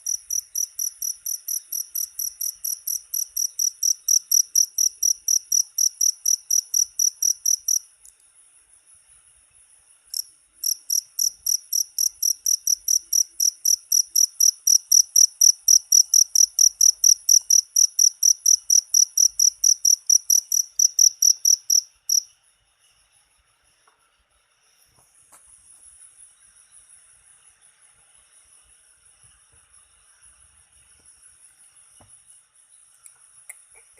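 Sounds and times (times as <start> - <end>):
cricket chirping: 0.0 - 33.9.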